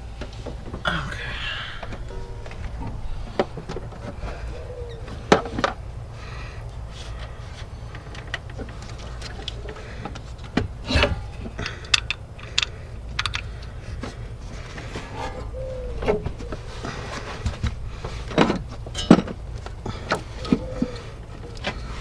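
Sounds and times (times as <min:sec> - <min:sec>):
low steady hum: 0:00.0 - 0:22.0
hand tools and bolts clinking: 0:10.8 - 0:14.2, 0:14.8 - 0:20.7.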